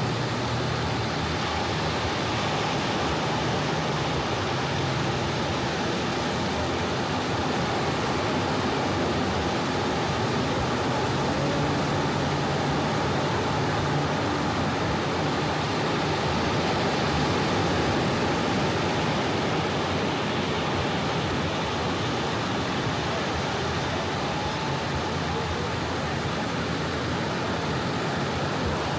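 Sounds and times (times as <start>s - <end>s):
small waves washing onto beach: 0.0s - 28.9s.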